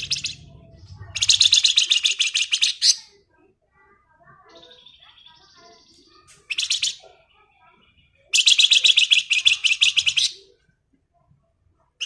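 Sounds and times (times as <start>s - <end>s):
songbird trilling: 0.0s - 3.0s.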